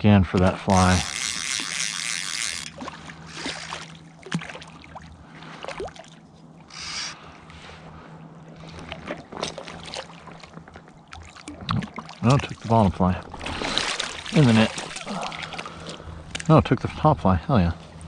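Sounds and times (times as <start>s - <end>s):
low river rumble: 0.0s - 18.0s
fish splashing water: 0.8s - 7.2s, 8.6s - 16.1s.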